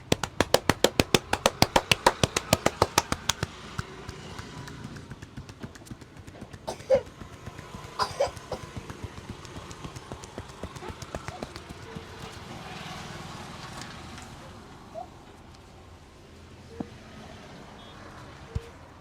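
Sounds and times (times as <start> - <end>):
rapid hand strikes massage: 0.0 - 12.7
short cough-like sounds: 6.7 - 7.1, 8.0 - 8.7.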